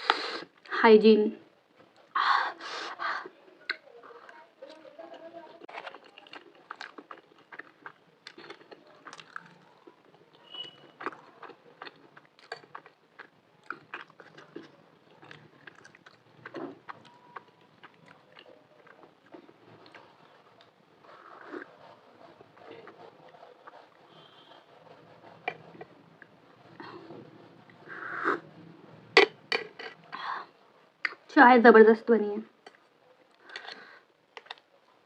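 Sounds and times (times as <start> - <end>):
food crunch: 3.7 - 21.8, 32.6 - 35.0
person chewing food: 3.7 - 28.5, 32.6 - 34.7.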